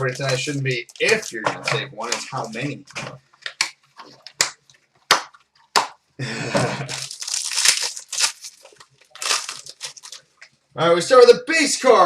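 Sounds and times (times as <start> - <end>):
plastic wrapping tearing and crinkling: 0.0 - 4.4, 6.9 - 10.4.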